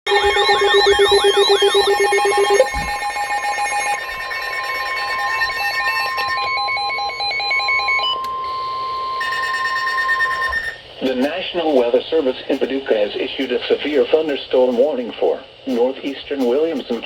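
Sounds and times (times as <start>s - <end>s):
pulsing electronic beeps: 0.0s - 8.2s
steady high alarm beep: 0.0s - 10.8s.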